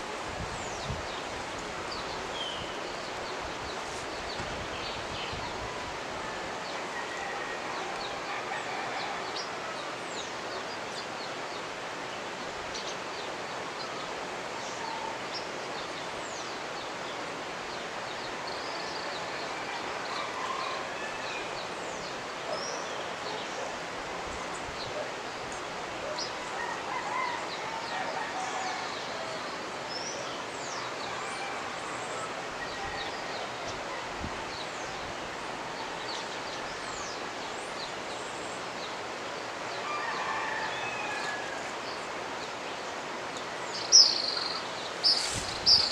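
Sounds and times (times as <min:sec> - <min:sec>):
river water rushing: 0:00.0 - 0:45.9
birds chirping and whistling: 0:43.8 - 0:45.9.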